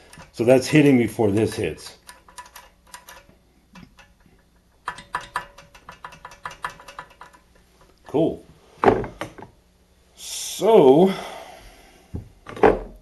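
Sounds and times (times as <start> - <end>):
metal linkage clicking: 2.0 - 7.5.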